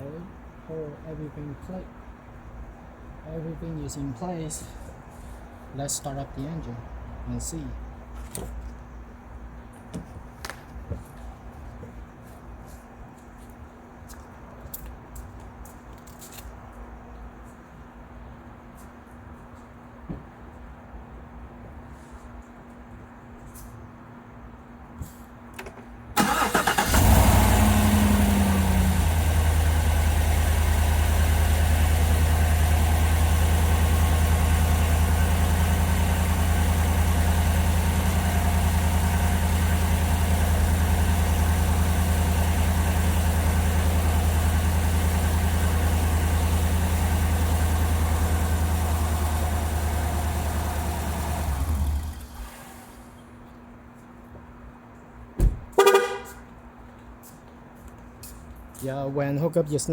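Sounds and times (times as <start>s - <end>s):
car engine cranking: 26.2s - 29.9s
car engine idling: 26.2s - 53.1s.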